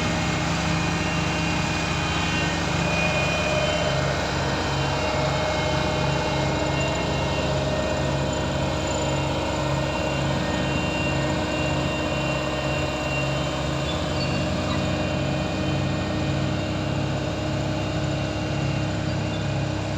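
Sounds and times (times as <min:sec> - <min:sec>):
diesel engine running: 0:00.0 - 0:19.9.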